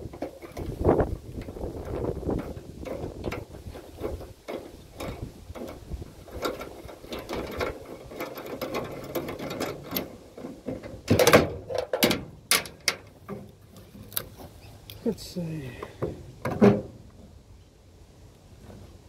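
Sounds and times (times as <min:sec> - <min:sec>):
metallic clicks and rattles of tools: 0:01.4 - 0:10.5, 0:11.1 - 0:13.4
metal parts clattering: 0:01.8 - 0:13.1.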